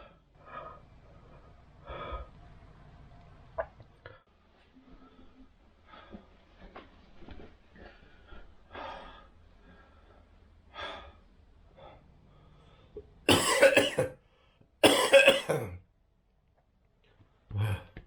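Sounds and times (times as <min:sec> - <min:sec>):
man coughing: 0:13.3 - 0:14.2, 0:14.8 - 0:15.8.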